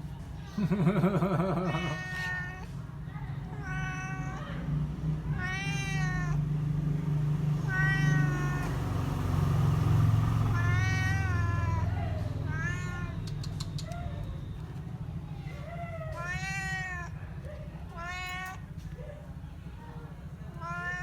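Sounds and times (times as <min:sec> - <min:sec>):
low continuous rumble: 0:00.0 - 0:21.0
cat meowing: 0:01.4 - 0:02.8, 0:03.4 - 0:04.7, 0:05.3 - 0:06.5, 0:07.6 - 0:09.1, 0:10.5 - 0:14.0, 0:15.6 - 0:17.2, 0:17.8 - 0:18.8, 0:20.5 - 0:21.0.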